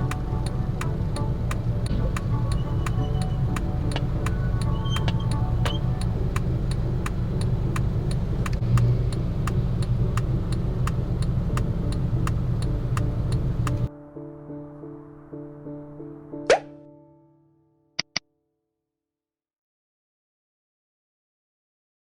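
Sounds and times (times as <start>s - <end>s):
sharp ticking: 0.0s - 13.9s
vehicle low rumble: 0.0s - 13.9s.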